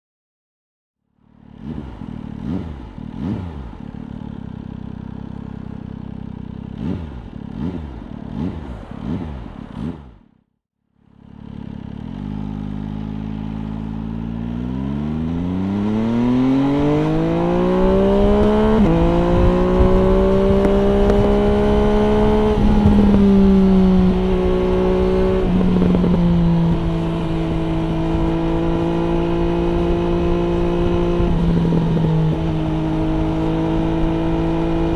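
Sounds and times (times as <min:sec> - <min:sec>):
motorcycle engine revving: 0:01.1 - 0:34.9
wind noise: 0:16.0 - 0:34.9.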